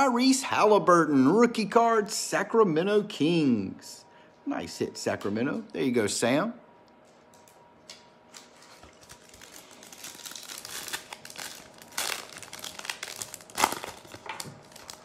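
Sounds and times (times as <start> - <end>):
plastic wrapper tearing and crinkling: 8.3 - 15.0.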